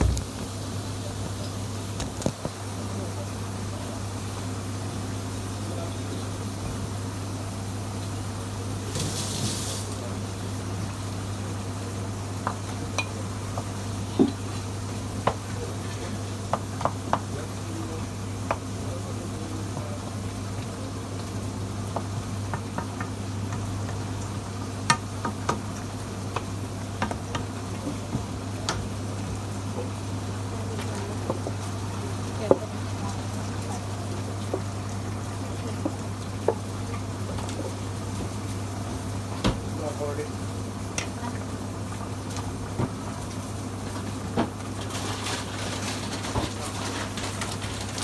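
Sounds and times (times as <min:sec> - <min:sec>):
faint sizzle: 0:00.0 - 0:48.0
utensil stirring food in a pot: 0:08.2 - 0:39.2.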